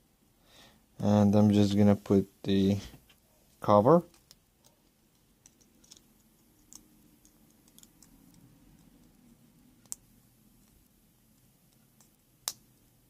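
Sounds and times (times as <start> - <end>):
plastic phone parts clicking: 5.4 - 9.0.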